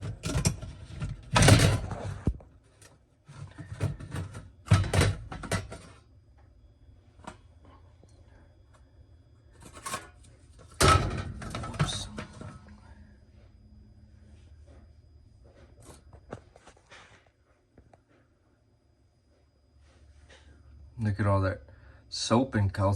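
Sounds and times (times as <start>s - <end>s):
dishwasher parts clattering: 0.0s - 2.3s, 3.4s - 6.0s, 9.6s - 12.7s
faint low hum: 0.0s - 22.9s.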